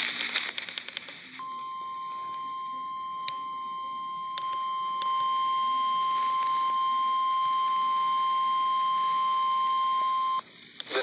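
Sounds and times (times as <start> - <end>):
clicks: 0.0 - 1.2.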